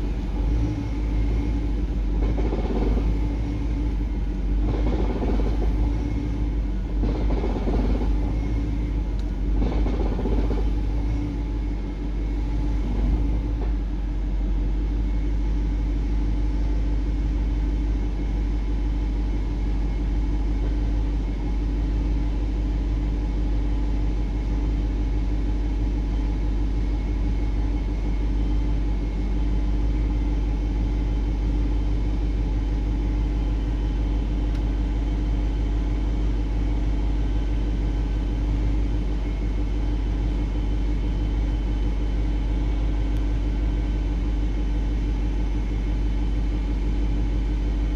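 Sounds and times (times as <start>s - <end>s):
car engine idling: 0.0s - 15.2s, 32.4s - 47.9s.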